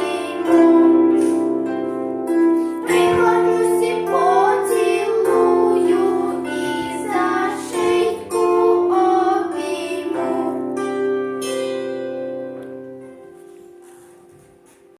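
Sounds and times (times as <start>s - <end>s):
girls singing: 0.0s - 1.6s, 2.8s - 11.2s
musical accompaniment: 0.0s - 14.9s.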